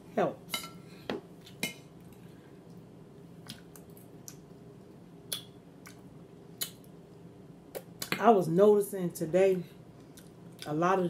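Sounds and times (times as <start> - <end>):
mouth clicks and smacks: 5.3 - 7.0.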